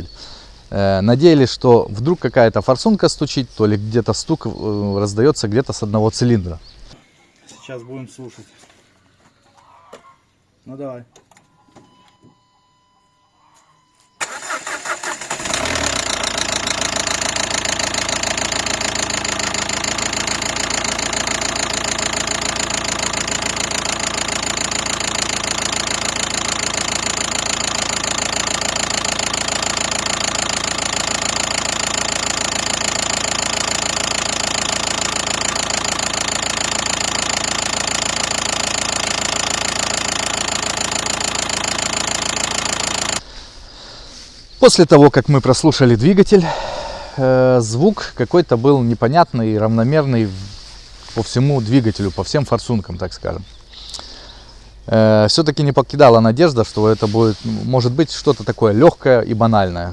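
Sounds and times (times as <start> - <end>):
diesel engine starting: 14.2 - 43.3
engine running with fast knock: 15.3 - 43.2.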